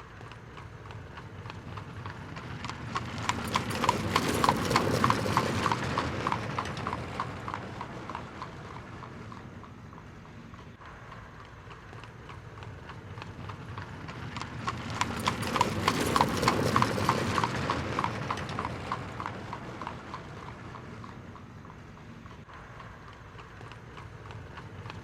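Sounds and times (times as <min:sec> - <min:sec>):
carriage wheels rumbling: 0:00.0 - 0:25.0
hooves clip-clopping on a hard road: 0:00.0 - 0:25.0.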